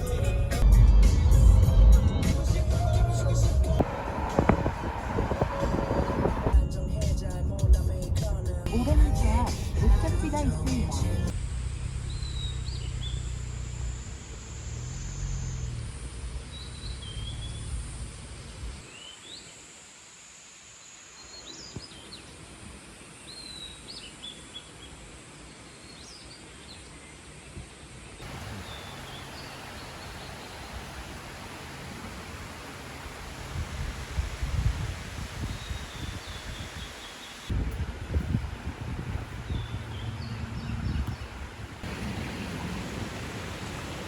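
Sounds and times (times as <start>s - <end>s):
low rumble: 0.6s - 18.8s
steady hiss: 3.8s - 6.5s, 18.8s - 25.8s, 28.2s - 39.4s
small birds chirping: 16.4s - 19.5s, 21.2s - 31.8s, 35.4s - 37.5s, 39.3s - 44.0s.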